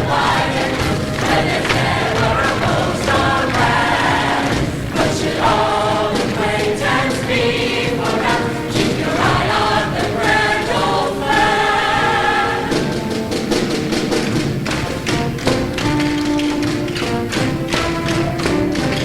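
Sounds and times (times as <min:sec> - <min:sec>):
choir singing: 0:00.0 - 0:13.7
drum hits: 0:00.0 - 0:19.0
instrumental accompaniment: 0:00.0 - 0:19.0.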